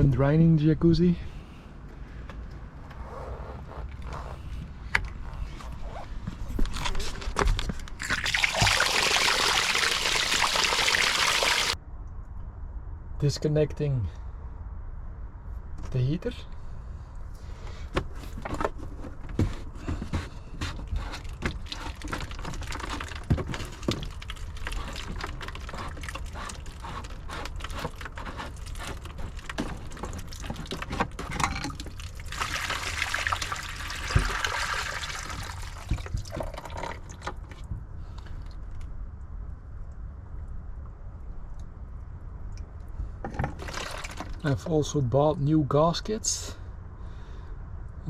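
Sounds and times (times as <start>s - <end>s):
water pouring and trickling: 6.8s - 11.8s, 20.8s - 37.7s, 43.4s - 44.6s.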